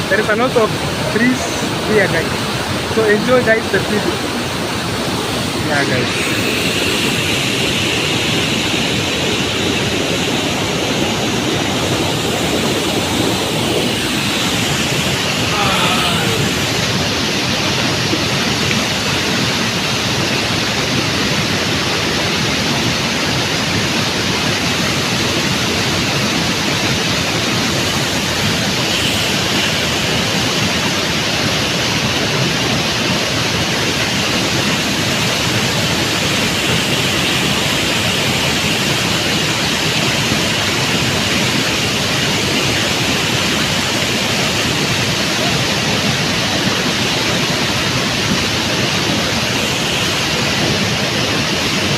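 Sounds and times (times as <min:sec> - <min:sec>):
waterfall rushing: 0:00.0 - 0:51.9.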